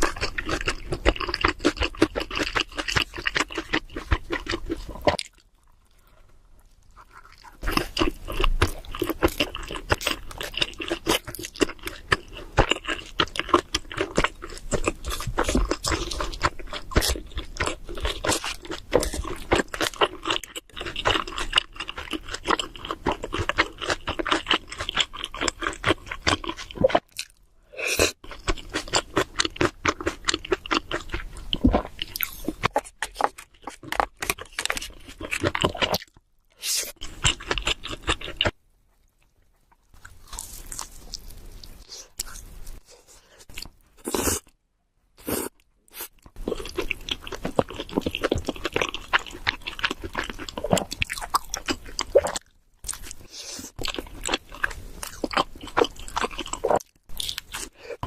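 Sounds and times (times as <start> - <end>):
close chewing with wet smacks: 0.0 - 5.8, 6.8 - 27.3, 46.2 - 58.0.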